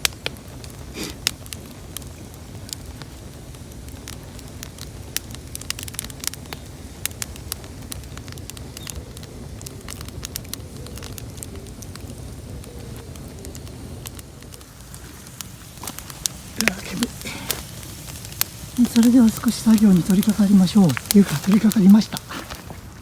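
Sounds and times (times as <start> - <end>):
bonfire crackles and pops: 0.0 - 23.0
flames rushing: 0.0 - 23.0.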